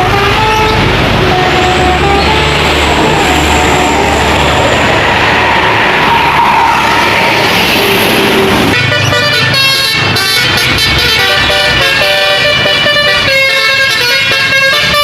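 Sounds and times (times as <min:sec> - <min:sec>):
multi-tone air horn melody: 0:00.0 - 0:04.5, 0:08.4 - 0:15.0
bus passing: 0:00.0 - 0:15.0.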